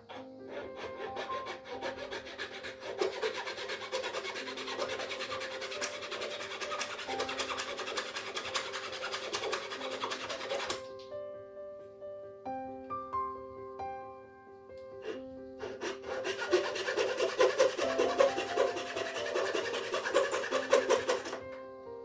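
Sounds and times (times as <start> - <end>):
carving tool scraping wood: 0.0 - 10.9, 15.0 - 21.5
soft piano music: 0.0 - 22.0.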